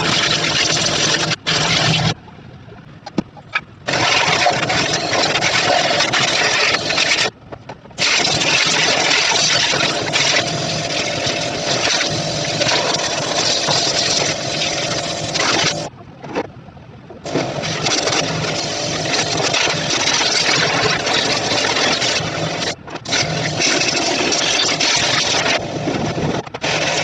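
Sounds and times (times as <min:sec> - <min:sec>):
motor-driven machine hissing rush: 0:03.9 - 0:07.3, 0:08.0 - 0:15.9, 0:17.2 - 0:27.0.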